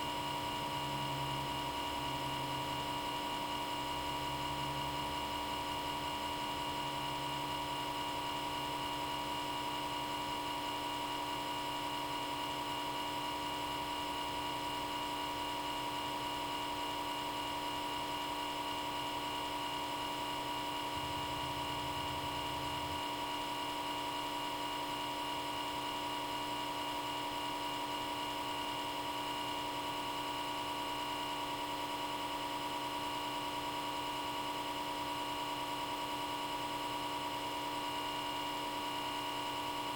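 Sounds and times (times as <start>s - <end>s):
cooling fan humming: 20.7s - 23.6s.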